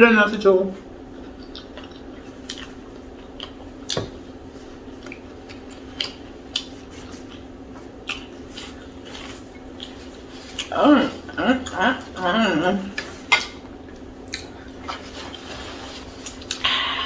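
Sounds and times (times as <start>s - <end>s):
steady low hum: 0.0s - 17.0s
wet mouth smacks while chewing: 1.2s - 4.1s, 5.0s - 10.7s, 13.0s - 15.4s.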